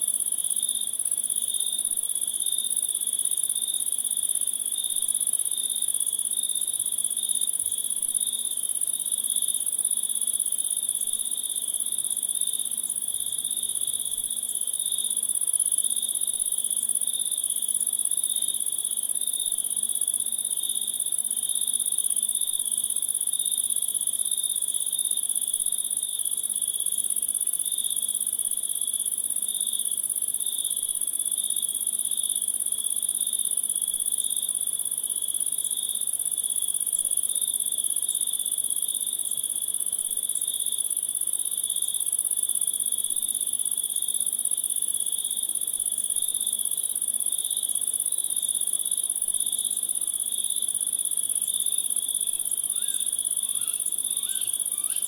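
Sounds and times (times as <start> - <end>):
insects trilling: 51.0 - 55.0.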